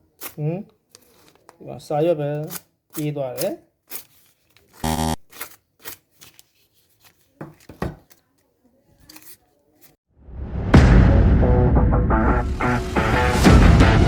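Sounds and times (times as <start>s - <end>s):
brief buzzing tone: 4.8s - 5.2s
music: 10.4s - 14.0s.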